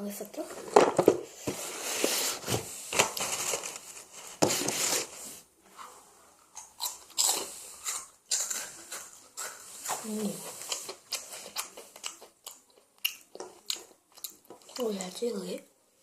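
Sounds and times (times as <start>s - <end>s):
crunchy snack being chewed: 6.5s - 14.8s.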